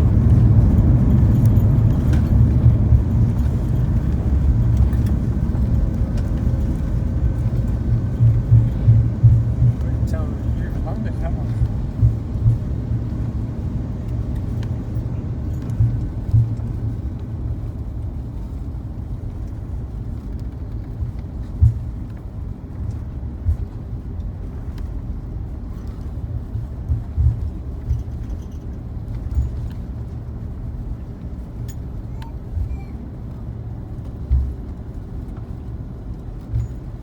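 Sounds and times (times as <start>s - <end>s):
short low thumps: 0.0s - 14.0s
aircraft cabin rumble: 0.0s - 37.0s.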